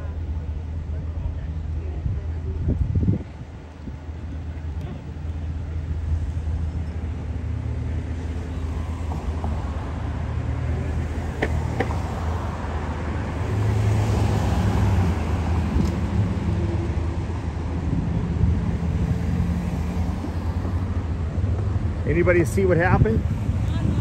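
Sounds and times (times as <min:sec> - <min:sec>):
traffic rumble: 0:00.0 - 0:24.0
vehicle passing close: 0:06.2 - 0:24.0.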